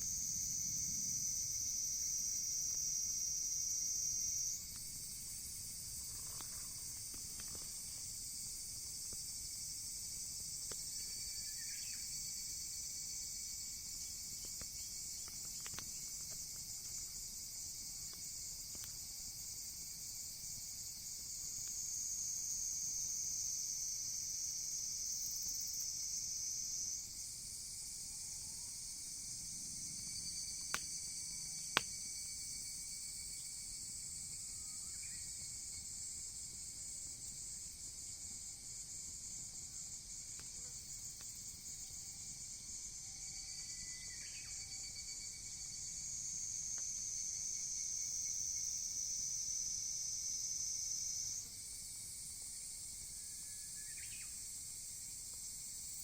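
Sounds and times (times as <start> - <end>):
crickets shrilling: 0.0 - 56.0
faint ticks: 6.0 - 8.0, 14.3 - 17.2, 18.0 - 19.1, 40.3 - 41.4.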